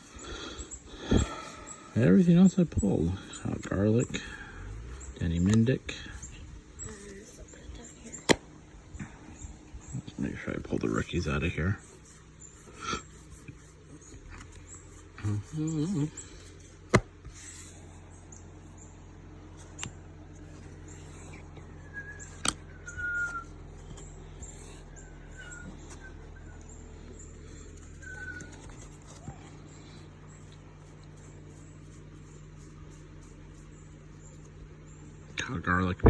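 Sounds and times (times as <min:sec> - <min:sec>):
faint bird chirps: 0:00.0 - 0:36.0
steady low hum: 0:00.0 - 0:36.0
cards being handled: 0:08.1 - 0:08.5, 0:12.8 - 0:17.8, 0:27.6 - 0:29.6.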